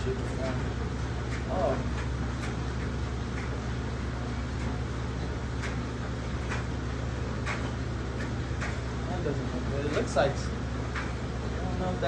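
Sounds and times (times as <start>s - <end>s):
low background hum: 0.0s - 12.0s.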